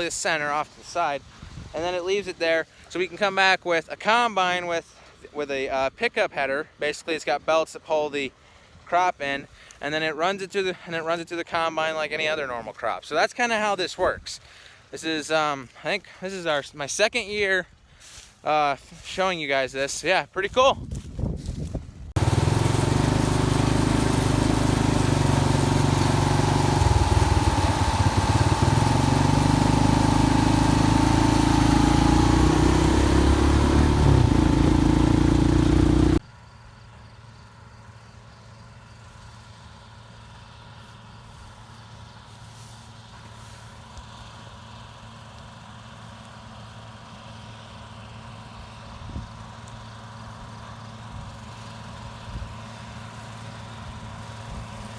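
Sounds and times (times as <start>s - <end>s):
heavy machine engine running: 22.2s - 36.2s.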